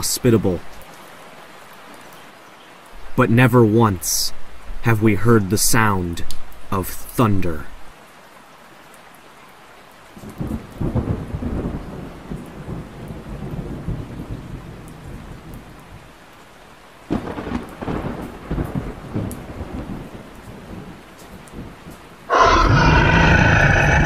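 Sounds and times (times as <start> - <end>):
steady rain falling: 0.0 - 24.0
thunder rumbling: 22.3 - 24.0.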